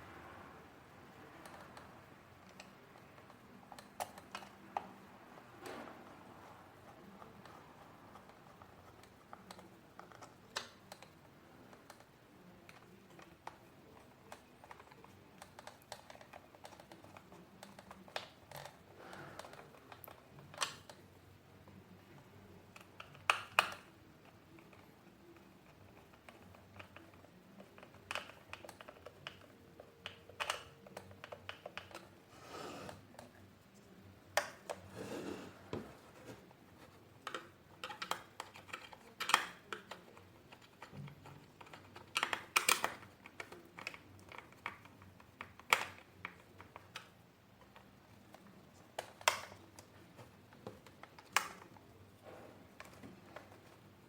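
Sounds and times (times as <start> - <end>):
plastic parts clicking and knocking: 1.3 - 32.2, 35.7 - 54.0
scraping rustle: 34.8 - 37.0.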